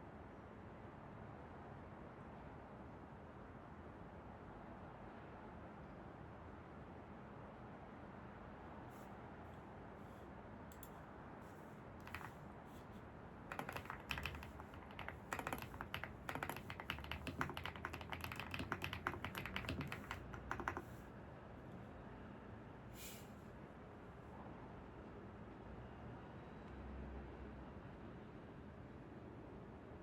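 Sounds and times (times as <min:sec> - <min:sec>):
typing on keyboard: 0:12.0 - 0:12.4, 0:13.5 - 0:21.0.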